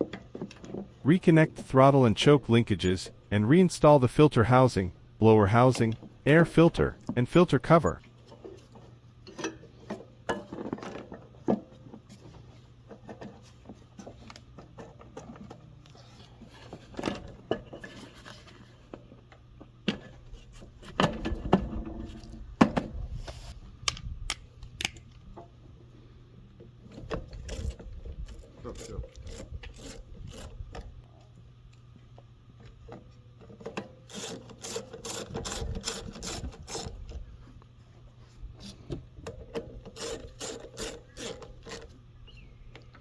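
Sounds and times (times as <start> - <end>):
engine parts clicking and scraping: 26.8 - 31.1, 32.6 - 42.1.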